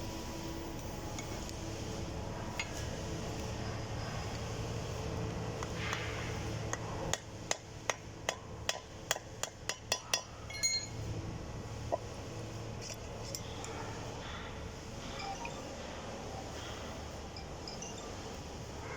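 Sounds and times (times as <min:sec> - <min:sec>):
ringing metallic clink: 0:10.5 - 0:11.0.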